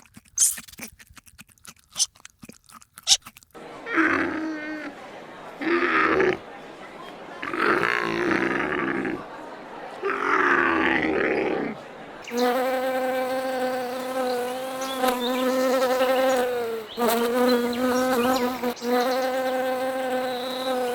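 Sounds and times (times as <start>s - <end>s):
insect buzzing: 12.2s - 20.9s.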